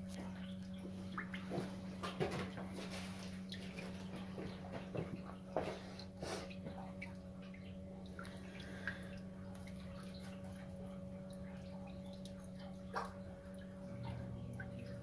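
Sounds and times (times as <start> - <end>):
low hum: 0.0 - 15.0
water dripping: 0.0 - 15.0
water pump humming: 0.0 - 15.0.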